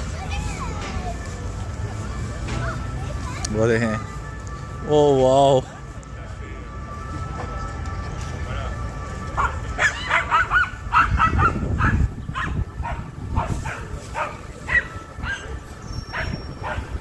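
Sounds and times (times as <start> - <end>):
dog yipping and barking: 9.4 - 17.0.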